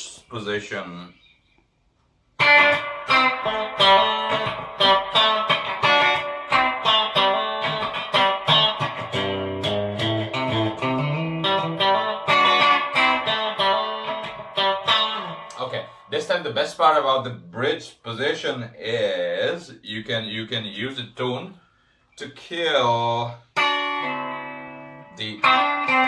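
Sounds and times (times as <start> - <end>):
clean electric guitar playing: 2.4 - 16.1, 23.6 - 26.0.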